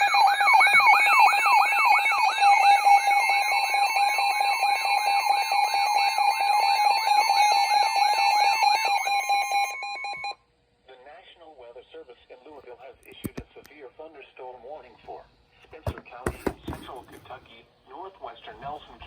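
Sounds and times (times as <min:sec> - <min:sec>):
falling siren-like sweep: 0:00.0 - 0:10.4
steady electronic alarm tone: 0:00.0 - 0:10.4.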